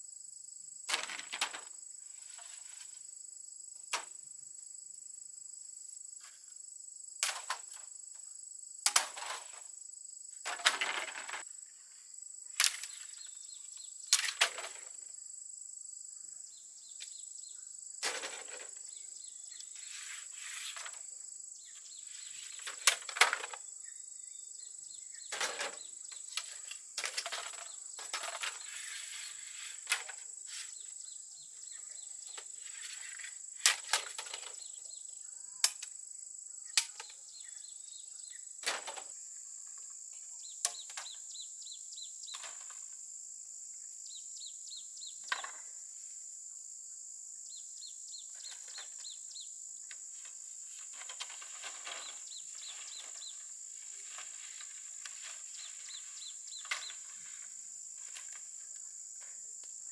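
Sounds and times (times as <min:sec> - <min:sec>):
insects chirring: 0:00.0 - 0:59.9
scraping or rustling: 0:00.9 - 0:03.0, 0:10.5 - 0:11.4, 0:18.0 - 0:19.0, 0:19.6 - 0:21.1, 0:25.3 - 0:31.0, 0:32.3 - 0:34.6, 0:50.2 - 0:58.4.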